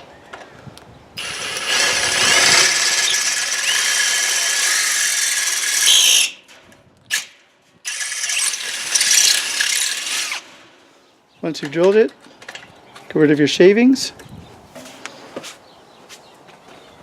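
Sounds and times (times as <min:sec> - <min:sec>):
power drill whining: 0:01.2 - 0:06.4, 0:07.9 - 0:10.5.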